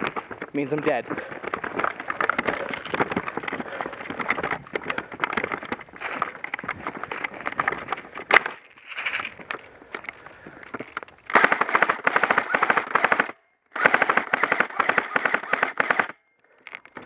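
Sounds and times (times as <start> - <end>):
footsteps through dry undergrowth: 0.0 - 11.3.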